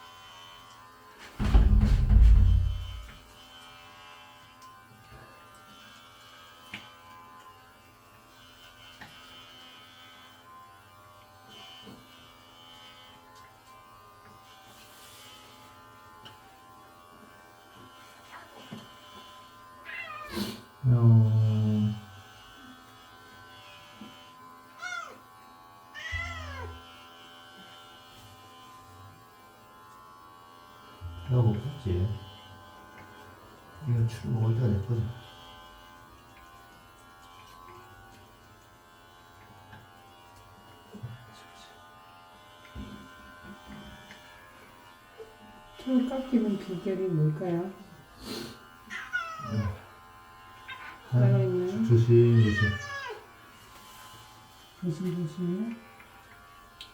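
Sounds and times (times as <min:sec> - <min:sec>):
electric pet clippers humming: 0:00.0 - 0:56.9
cat meowing: 0:19.8 - 0:20.4, 0:24.8 - 0:25.2, 0:26.0 - 0:26.8, 0:48.9 - 0:49.8, 0:50.7 - 0:51.0, 0:52.4 - 0:53.2.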